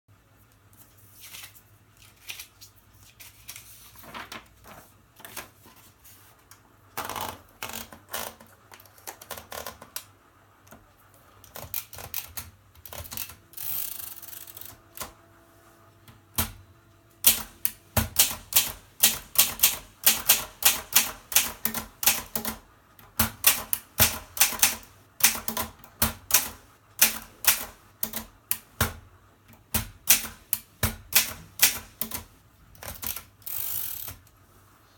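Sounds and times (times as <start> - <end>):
typewriter typing: 10.7 - 15.2, 17.2 - 29.0, 29.6 - 34.3.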